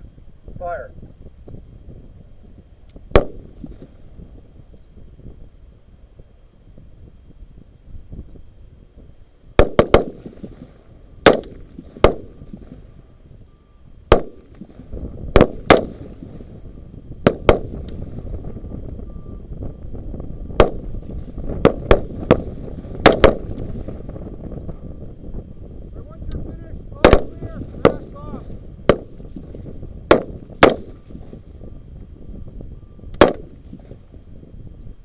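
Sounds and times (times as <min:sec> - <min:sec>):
rifle shots: 0:03.1 - 0:03.8, 0:09.6 - 0:12.8, 0:14.1 - 0:16.4, 0:17.2 - 0:17.9, 0:20.6 - 0:23.9, 0:27.0 - 0:28.2, 0:28.9 - 0:31.0, 0:33.2 - 0:33.9.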